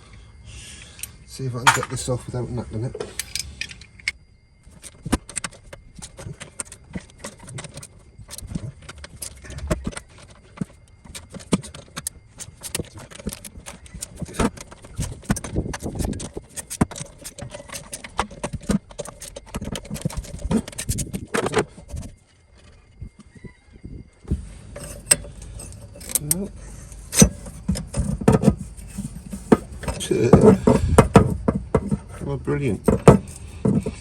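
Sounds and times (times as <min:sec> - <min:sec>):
metal knocks and clinks: 0:01.0 - 0:02.3, 0:03.0 - 0:22.8.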